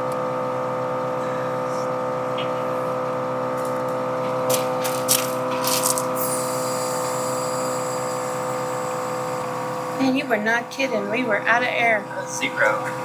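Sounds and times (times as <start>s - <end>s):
air compressor motor humming: 0.0s - 13.0s
air hissing: 4.3s - 10.0s.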